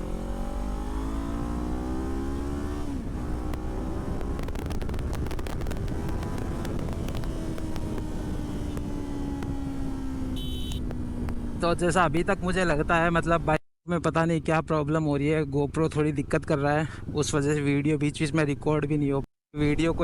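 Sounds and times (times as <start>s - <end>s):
motorcycle engine accelerating: 0.0s - 11.8s
wind rush over microphone: 3.1s - 9.7s.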